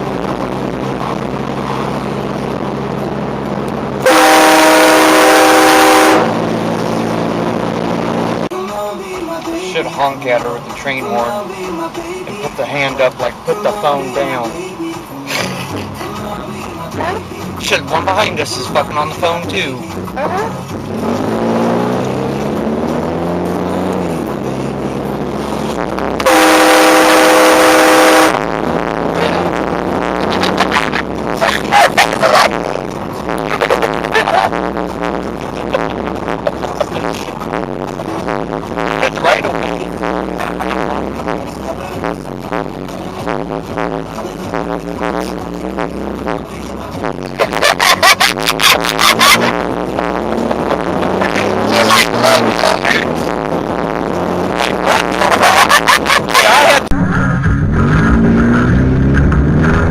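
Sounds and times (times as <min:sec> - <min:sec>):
low hum of car: 0:00.0 - 0:59.9
train horn on a car: 0:04.0 - 0:06.5, 0:26.2 - 0:28.4.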